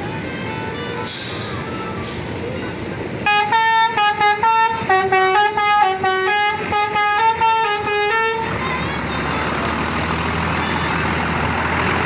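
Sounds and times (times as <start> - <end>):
bus musical horn melody: 0.0 - 9.6.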